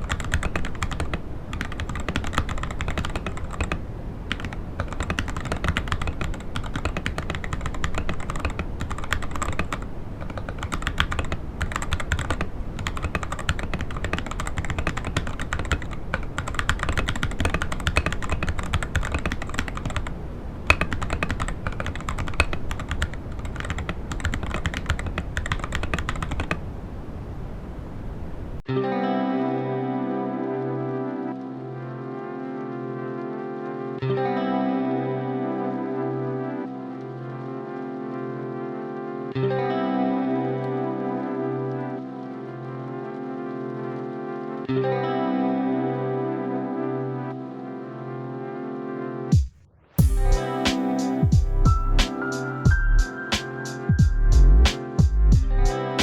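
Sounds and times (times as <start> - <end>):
mechanical keyboard typing: 0.0 - 20.1, 20.7 - 26.6.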